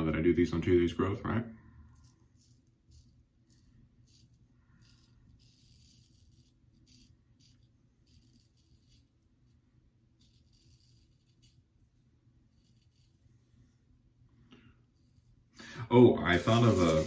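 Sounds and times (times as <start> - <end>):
razor scraping stubble: 1.8 - 9.1, 10.2 - 11.7, 12.4 - 13.2, 16.3 - 17.0.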